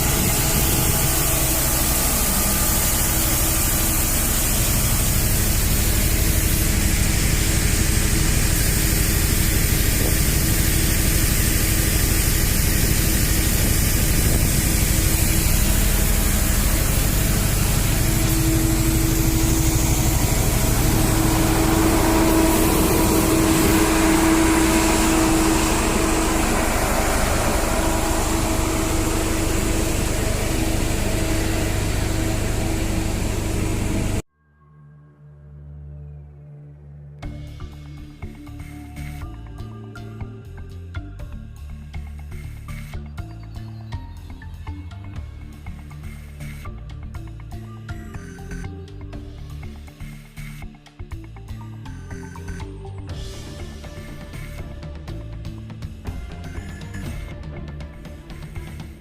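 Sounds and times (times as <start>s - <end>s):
machinery drone with hum: 0.0s - 34.3s, 35.5s - 59.0s
steady tones: 0.0s - 34.3s.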